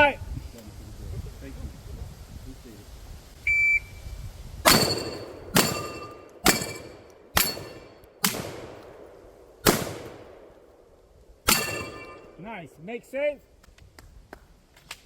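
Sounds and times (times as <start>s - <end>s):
steel plate ringing: 4.7s - 8.0s, 11.5s - 12.4s
gunshots: 4.7s - 10.5s, 11.5s - 12.3s.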